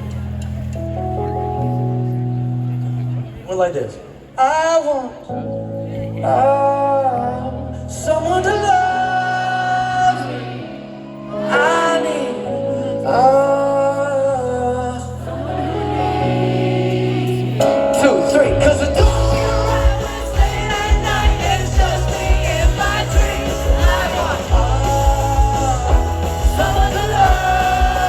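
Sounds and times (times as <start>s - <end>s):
sustained keyboard chords: 0.0s - 4.4s, 5.3s - 28.0s
male lead vocal singing: 6.1s - 28.0s
drums and bass beat: 18.7s - 28.0s.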